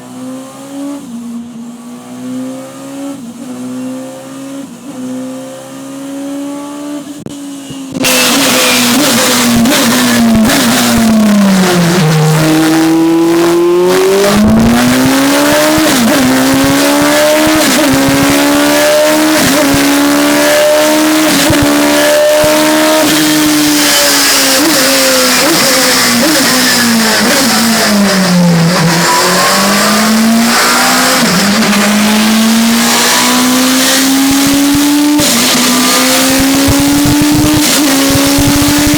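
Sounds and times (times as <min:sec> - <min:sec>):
race car engine revving: 0:00.0 - 0:38.9.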